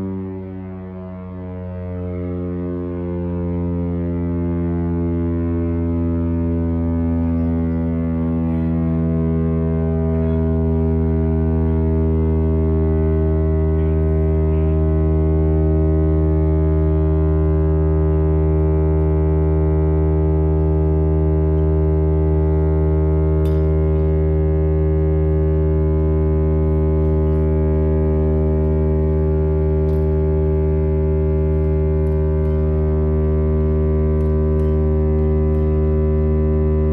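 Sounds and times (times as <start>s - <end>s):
air raid siren steady tone: 0.0s - 36.9s.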